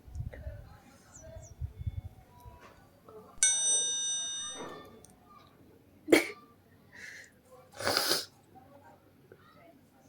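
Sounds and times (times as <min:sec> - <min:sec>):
bell-like chime: 0:03.4 - 0:05.1.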